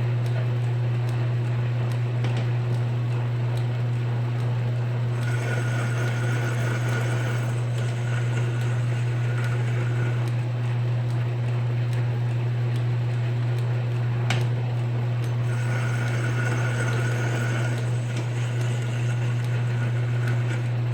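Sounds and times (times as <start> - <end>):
lathe motor hum: 3.3 - 11.9, 14.8 - 20.9
high whine of thread cutting: 5.1 - 10.6, 15.2 - 20.9.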